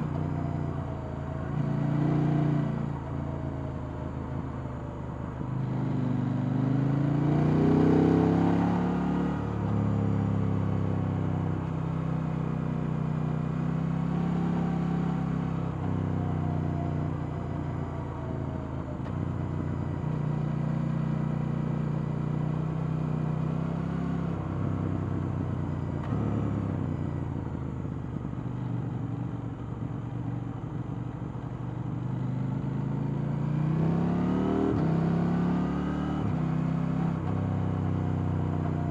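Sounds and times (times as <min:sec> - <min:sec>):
motorcycle engine revving: 0:05.6 - 0:10.6, 0:32.0 - 0:38.9.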